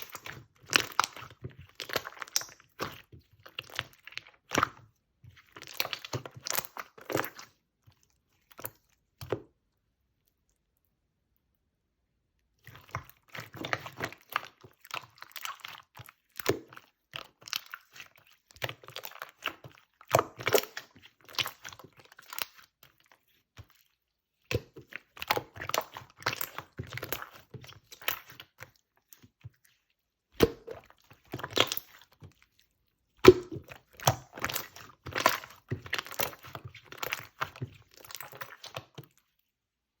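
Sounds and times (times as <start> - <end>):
slime squished by hand: 0.0 - 10.8, 12.4 - 39.5.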